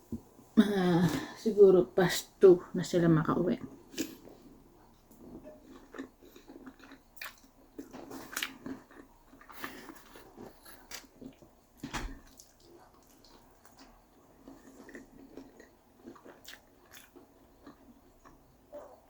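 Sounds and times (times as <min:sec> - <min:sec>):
person chewing food: 0:03.8 - 0:19.0.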